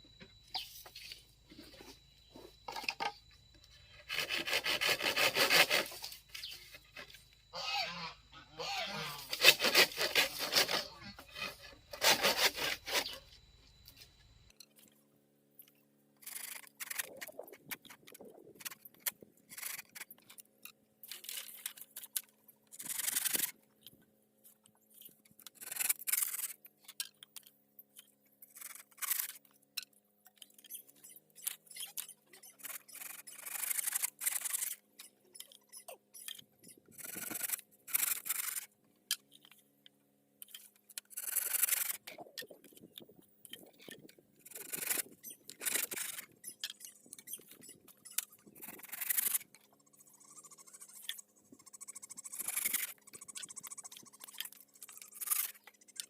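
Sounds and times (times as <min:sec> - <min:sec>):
hand tool scraping wood: 0:00.6 - 0:07.2, 0:08.6 - 0:13.3.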